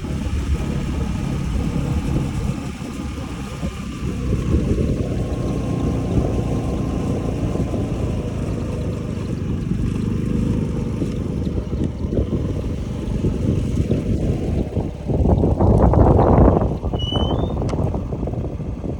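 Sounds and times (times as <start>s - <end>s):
scooter engine running: 0.0s - 18.9s
wind buffeting microphone: 0.0s - 18.9s.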